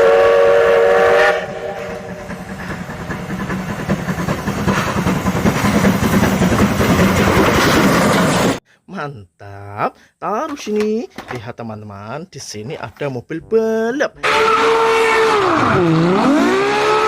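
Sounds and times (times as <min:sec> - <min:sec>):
toy train whistle hoot: 0:00.0 - 0:02.1, 0:14.2 - 0:17.0.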